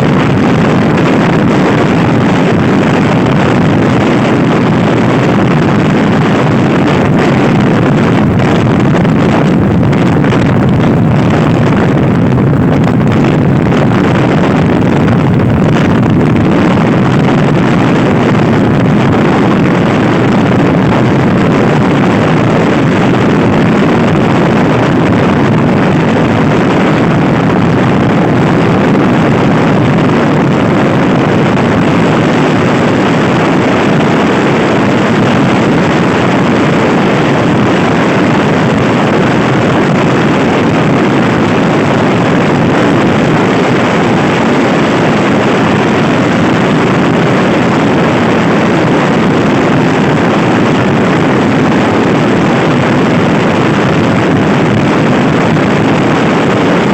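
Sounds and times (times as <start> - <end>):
wind rushing over microphone: 0.0 - 56.9.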